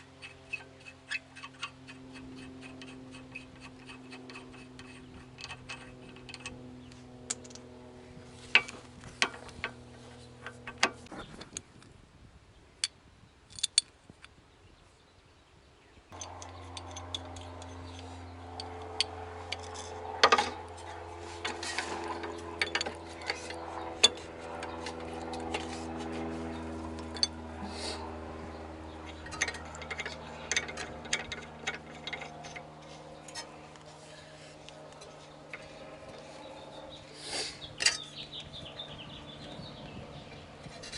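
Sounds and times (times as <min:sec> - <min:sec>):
steady hum: 0:16.1 - 0:40.9.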